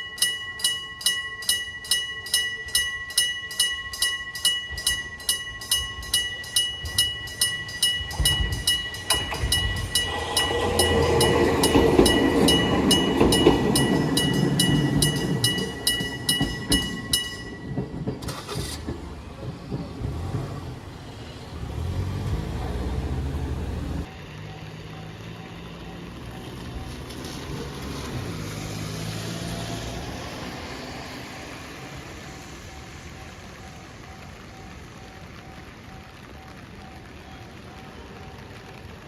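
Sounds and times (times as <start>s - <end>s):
level-crossing bell ringing: 0.0s - 18.7s
train rumble: 0.0s - 39.0s.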